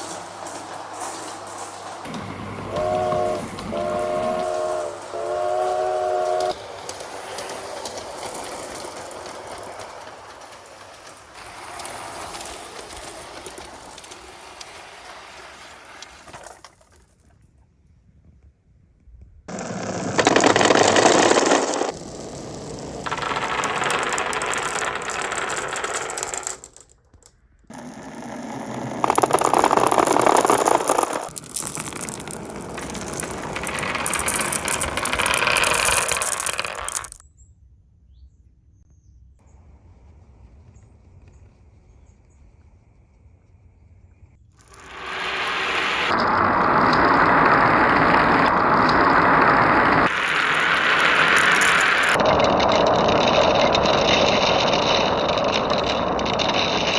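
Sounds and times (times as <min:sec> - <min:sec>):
marbles rattling down a marble run: 0:19.5 - 0:37.2, 0:44.6 - 0:56.9.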